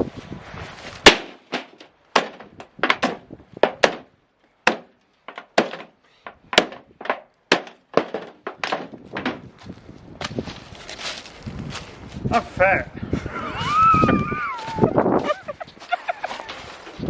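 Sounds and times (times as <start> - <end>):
hammer driving nails: 1.1 - 9.4.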